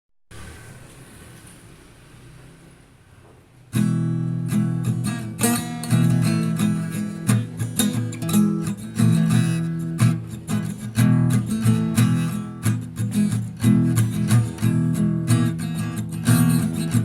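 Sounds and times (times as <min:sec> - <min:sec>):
acoustic guitar strumming chords: 0:03.7 - 0:17.0.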